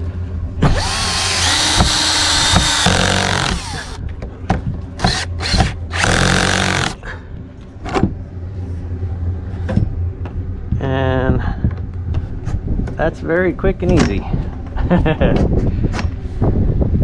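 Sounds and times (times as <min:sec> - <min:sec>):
cordless drill driving screws: 0:00.6 - 0:04.0, 0:05.0 - 0:07.0.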